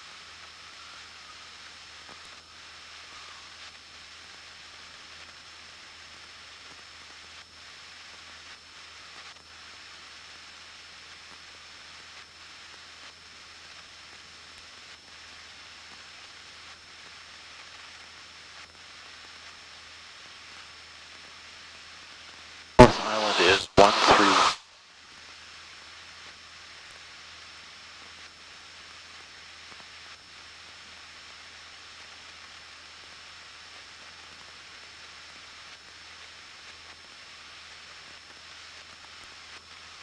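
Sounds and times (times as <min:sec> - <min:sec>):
cabin audio hiss: 0:00.0 - 0:40.0
radio click: 0:22.8 - 0:24.6.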